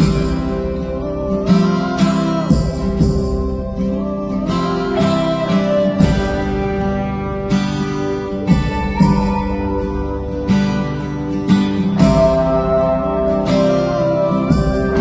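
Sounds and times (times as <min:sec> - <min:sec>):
gliding melody line: 0:00.0 - 0:15.0
strummed acoustic guitar music: 0:00.0 - 0:15.0.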